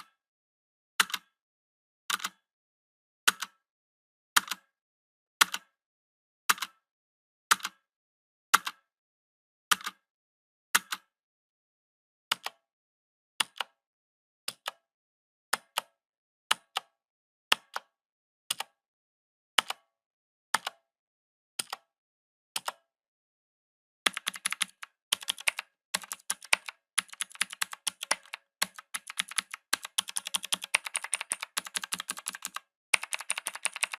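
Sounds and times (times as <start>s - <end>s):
mechanical keyboard typing: 24.1s - 34.0s.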